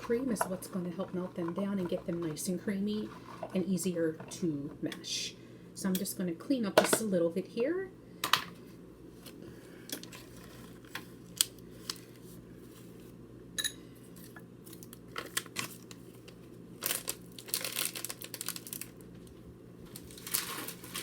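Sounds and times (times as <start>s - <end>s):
steady low hum: 0.0s - 15.2s
crinkling and rustling: 9.2s - 13.1s, 14.2s - 21.0s.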